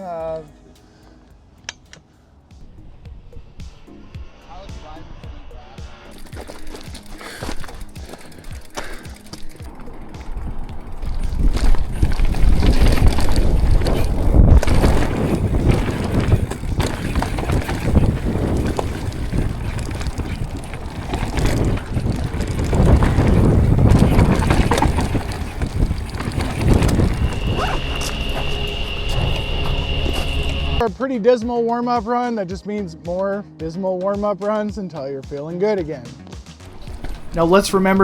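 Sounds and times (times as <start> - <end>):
bike rattling over bumps: 6.0 - 30.8, 36.7 - 38.0
bike tyres rolling and skidding: 6.0 - 30.8, 36.7 - 38.0
wind buffeting microphone: 9.6 - 30.8
steady high tone: 27.3 - 30.8.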